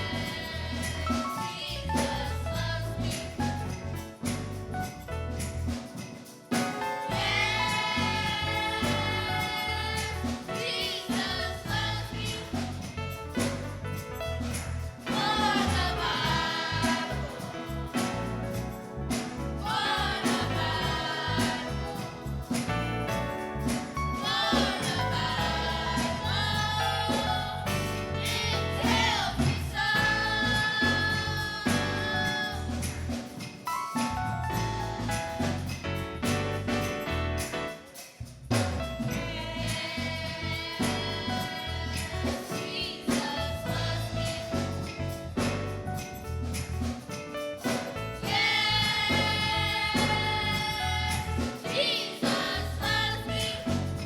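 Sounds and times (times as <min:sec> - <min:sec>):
choir singing gospel song: 0:00.0 - 0:05.0, 0:05.7 - 0:13.7, 0:14.4 - 0:35.7, 0:39.1 - 0:45.8, 0:47.7 - 0:54.0
band with a steady beat: 0:00.0 - 0:54.0
band with bass and drums: 0:34.0 - 0:37.6, 0:43.1 - 0:51.6.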